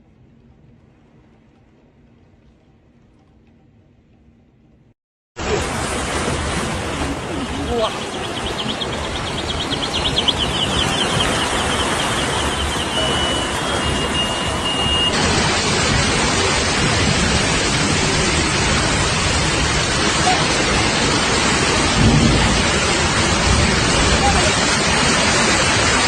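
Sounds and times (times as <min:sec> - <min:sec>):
water rushing: 0:05.4 - 0:26.0.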